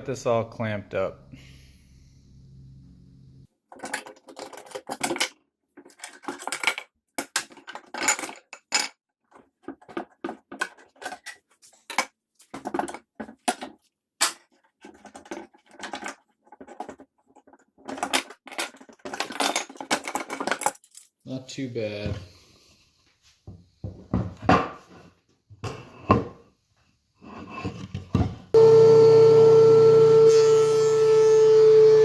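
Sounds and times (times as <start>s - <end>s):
metallic clinking and clattering: 15.1s - 21.2s.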